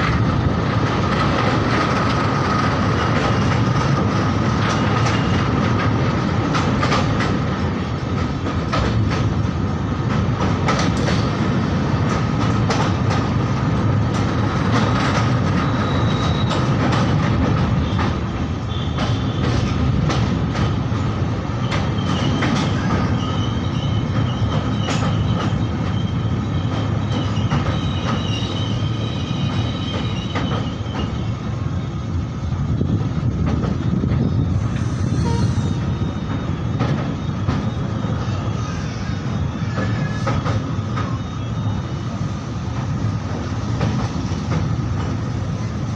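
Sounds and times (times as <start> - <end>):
train rumbling over iron bridge: 0.0 - 45.9
high wheel squeals: 15.6 - 16.7, 21.6 - 32.0, 33.8 - 42.1.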